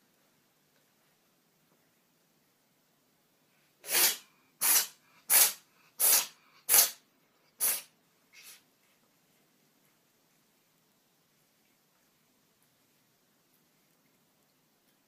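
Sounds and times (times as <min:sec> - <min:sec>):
cat sneezing: 0:03.8 - 0:07.0, 0:07.6 - 0:08.6.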